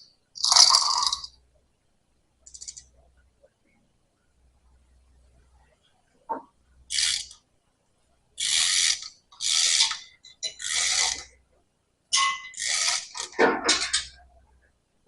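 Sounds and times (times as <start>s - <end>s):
ratchet clicking: 2.5s - 2.8s, 6.9s - 7.4s.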